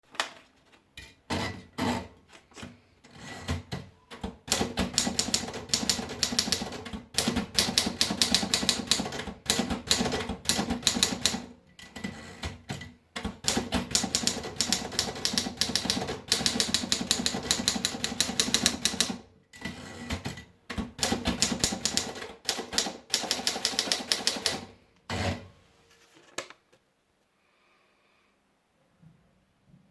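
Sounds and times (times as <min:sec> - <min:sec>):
typewriter keystrokes: 0:04.5 - 0:11.5, 0:12.7 - 0:19.2, 0:20.1 - 0:24.7.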